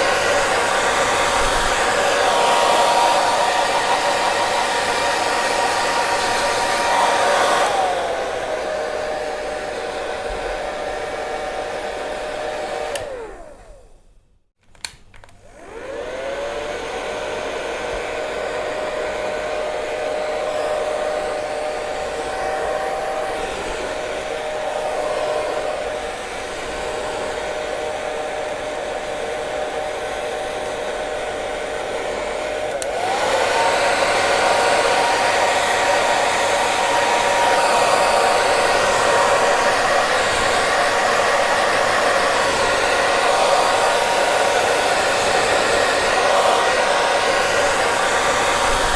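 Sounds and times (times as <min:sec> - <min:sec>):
hair dryer motor whine: 0:00.0 - 0:14.1, 0:14.8 - 0:48.9
hair dryer switch click: 0:12.7 - 0:13.3, 0:14.7 - 0:15.4, 0:32.5 - 0:33.3.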